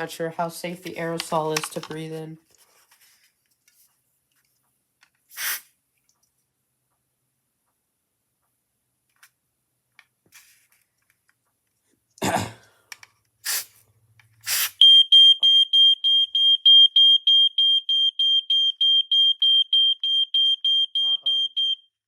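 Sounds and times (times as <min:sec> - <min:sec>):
aerosol spray hisses: 0:05.3 - 0:05.7, 0:13.4 - 0:13.7, 0:14.4 - 0:14.8
smoke alarm pulsing tone: 0:14.8 - 0:22.0.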